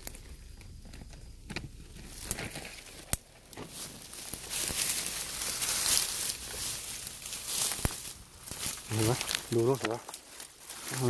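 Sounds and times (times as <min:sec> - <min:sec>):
leaf litter rustling and crackling: 0:00.0 - 0:11.0
twig snaps: 0:01.5 - 0:05.0, 0:07.4 - 0:11.0.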